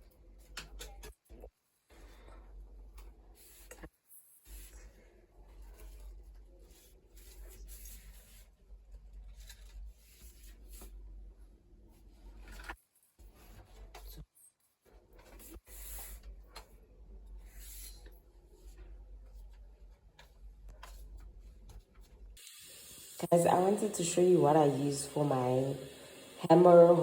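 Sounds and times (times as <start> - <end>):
rustling and rubbing handling: 1.9 - 22.4.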